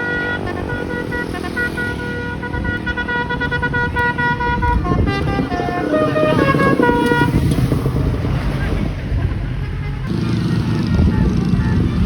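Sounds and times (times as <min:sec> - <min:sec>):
multi-tone bus horn tune: 0:00.0 - 0:12.0
steady low rumble: 0:02.3 - 0:10.1.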